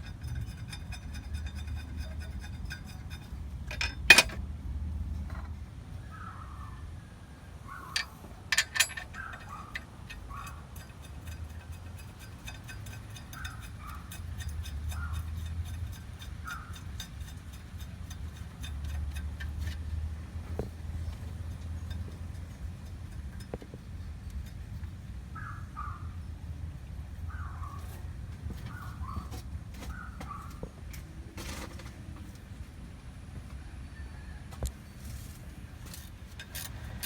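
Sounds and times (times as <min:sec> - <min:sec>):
metal tools clinking: 0:00.0 - 0:04.4, 0:07.9 - 0:19.9, 0:21.0 - 0:24.8, 0:35.9 - 0:37.0.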